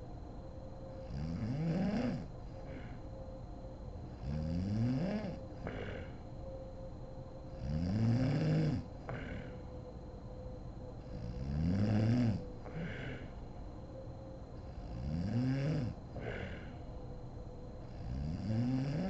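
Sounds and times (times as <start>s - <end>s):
woman snoring: 1.0s - 3.0s, 4.2s - 6.2s, 7.6s - 9.7s, 11.1s - 13.3s, 14.6s - 16.8s, 17.9s - 19.0s
breathy puff of air: 12.7s - 13.4s, 16.2s - 16.9s.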